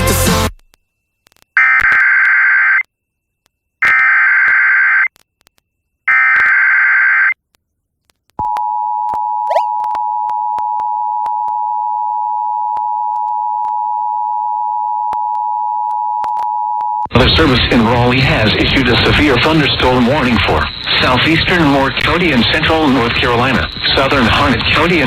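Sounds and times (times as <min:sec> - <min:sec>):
two-tone attention signal: 0:09.3 - 0:12.3
buzzy data bursts: 0:17.2 - 0:25.0.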